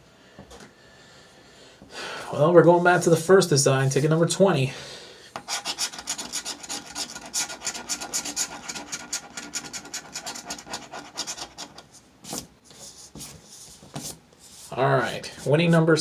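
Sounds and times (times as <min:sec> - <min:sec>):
scratching lottery ticket: 0:05.5 - 0:11.9.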